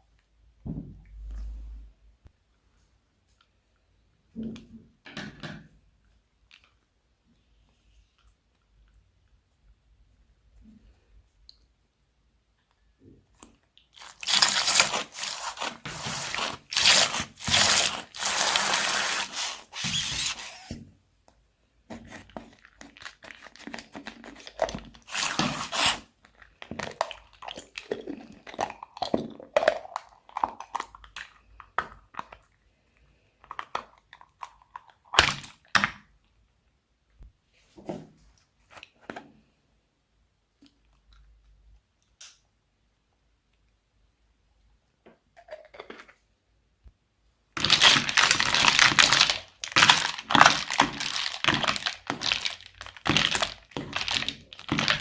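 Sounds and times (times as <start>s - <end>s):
slime crunching and squishing: 13.8s - 20.7s, 21.9s - 32.6s, 47.6s - 55.0s.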